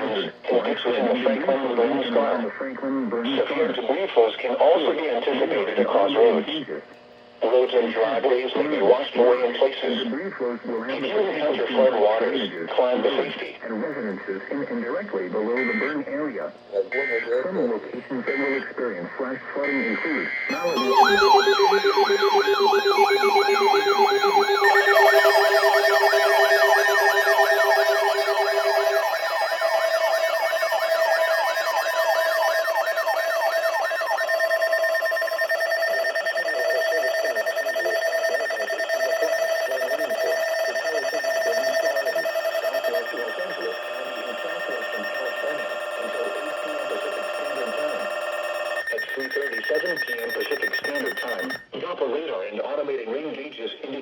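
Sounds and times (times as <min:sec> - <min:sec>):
steady alarm tones: 0:00.0 - 0:02.5, 0:03.2 - 0:51.7
warbling siren: 0:15.6 - 0:15.9, 0:20.5 - 0:51.6.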